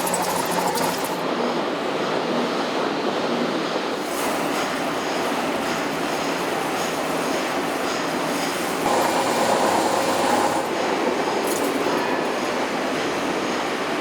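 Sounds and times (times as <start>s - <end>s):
whining machine tone: 0.0s - 1.2s, 8.8s - 13.1s
factory machinery running: 0.0s - 2.3s, 4.0s - 14.0s.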